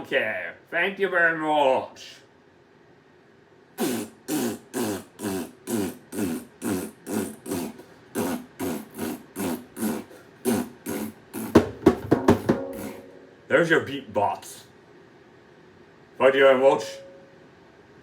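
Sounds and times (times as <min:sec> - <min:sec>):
man beatboxing: 0:03.8 - 0:13.1.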